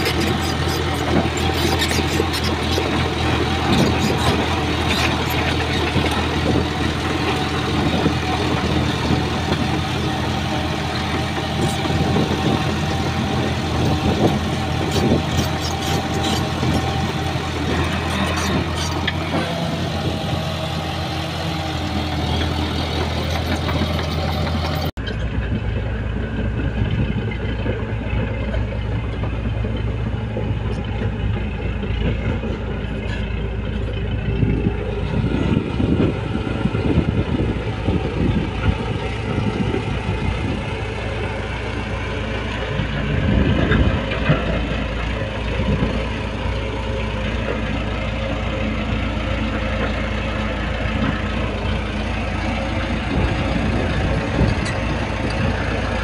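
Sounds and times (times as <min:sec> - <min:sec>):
bulldozer diesel engine running: 0:00.0 - 0:56.0.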